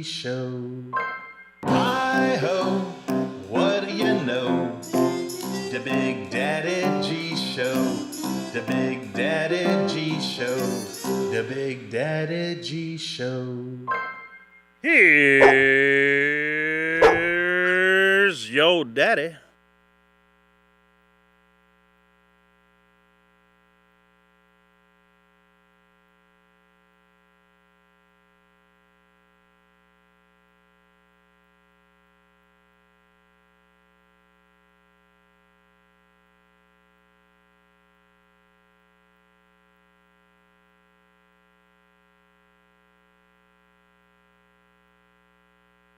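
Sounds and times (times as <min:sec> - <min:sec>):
faint steady hum: 0:11.4 - 0:45.9.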